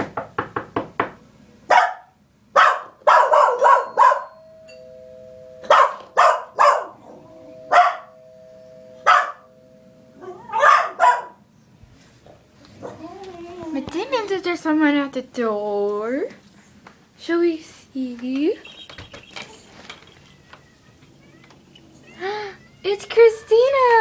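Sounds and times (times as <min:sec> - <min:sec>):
dog barking: 0:01.7 - 0:04.4, 0:05.7 - 0:08.1, 0:09.0 - 0:09.5, 0:10.2 - 0:11.4
two-tone doorbell chime: 0:03.8 - 0:10.4.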